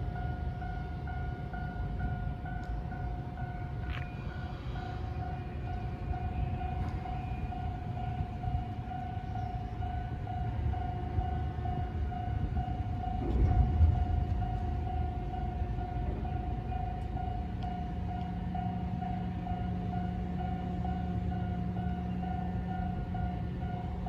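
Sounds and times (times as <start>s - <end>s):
level crossing warning bell: 0.0s - 24.0s
low rumble: 11.6s - 17.8s.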